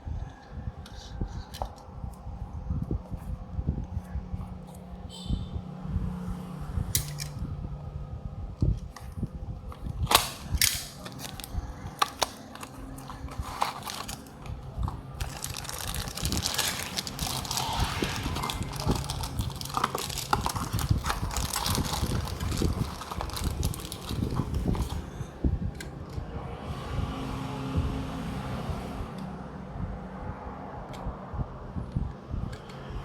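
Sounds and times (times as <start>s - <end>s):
packaging rustling and crinkling: 9.7s - 25.2s.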